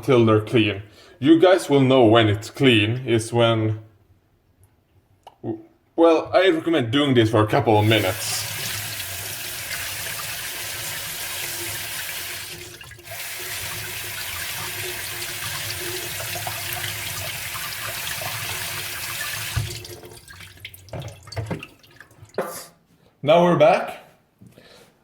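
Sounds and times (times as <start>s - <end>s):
tap water running into sink: 7.8s - 22.5s.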